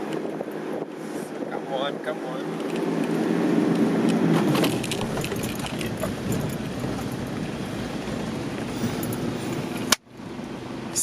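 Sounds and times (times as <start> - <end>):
diesel truck engine working hard: 3.2 - 11.0
knocks and rattles: 4.4 - 7.4.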